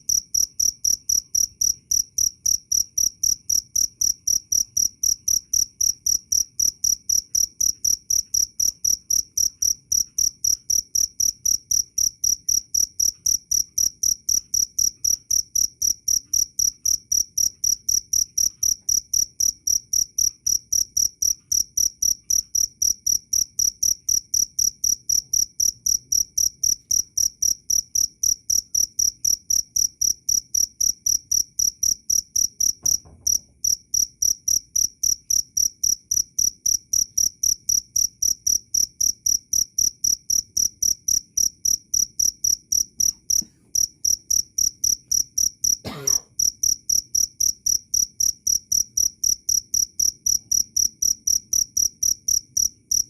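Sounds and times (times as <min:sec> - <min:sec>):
cricket chirping: 0:00.0 - 0:53.0.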